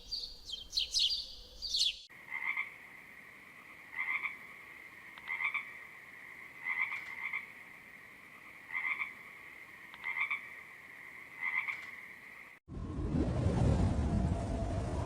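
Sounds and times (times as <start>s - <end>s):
frogs croaking: 0.0s - 12.6s
deep rush of noise: 12.7s - 15.0s.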